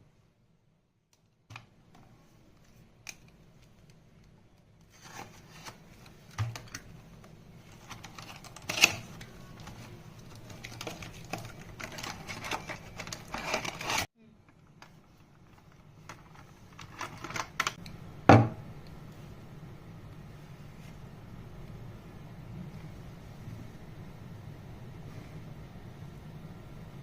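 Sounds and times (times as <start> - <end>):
rustling of box and wrapping: 7.5 - 14.1.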